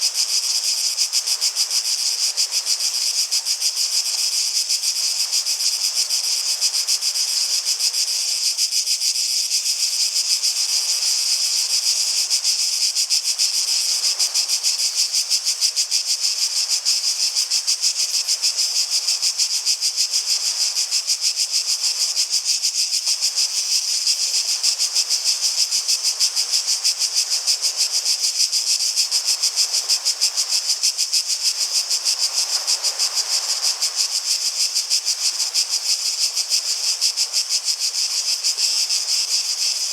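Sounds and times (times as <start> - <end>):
cicadas singing: 0.0 - 39.9.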